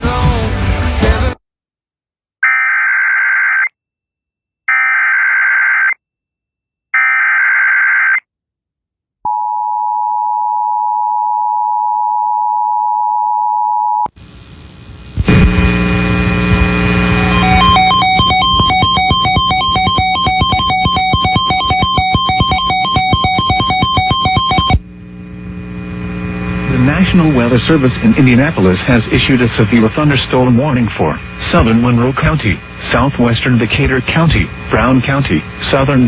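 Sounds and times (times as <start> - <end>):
data header warble bursts: 17.0 - 24.8
two-tone attention signal: 17.2 - 24.8
electronic music with beat: 17.3 - 24.8.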